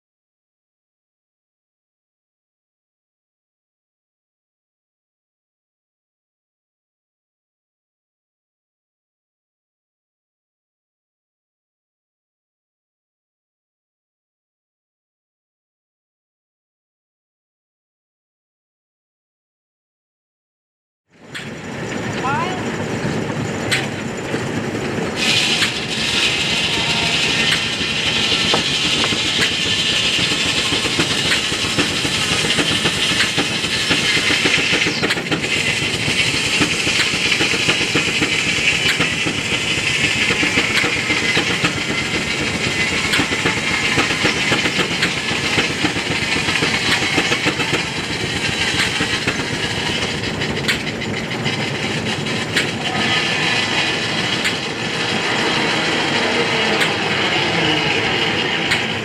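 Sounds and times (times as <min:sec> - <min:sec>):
sawmill mechanical clatter: 0:21.1 - 0:59.0
steam engine hissing: 0:21.2 - 0:59.0.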